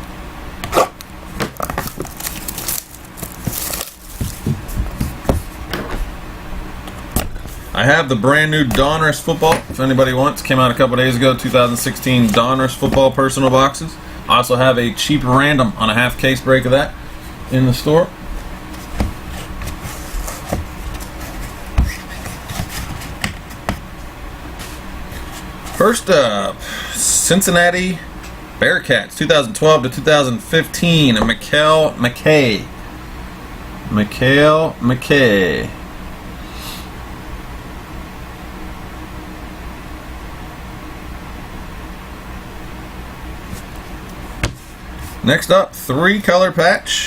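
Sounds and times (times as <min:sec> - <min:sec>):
cardboard and wrapper rustling: 0:01.4 - 0:05.6, 0:18.4 - 0:23.9
plastic wrapper crinkling: 0:01.5 - 0:04.7.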